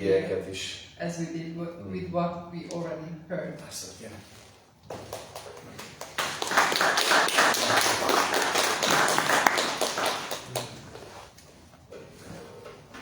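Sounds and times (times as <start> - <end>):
crowd applauding: 4.9 - 11.1.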